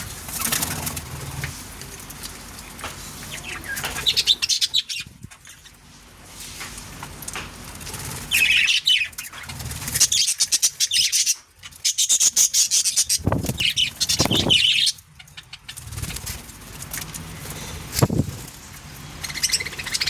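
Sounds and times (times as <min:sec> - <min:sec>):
budgerigars chirping: 0:03.3 - 0:05.1, 0:10.0 - 0:15.8, 0:19.2 - 0:20.0.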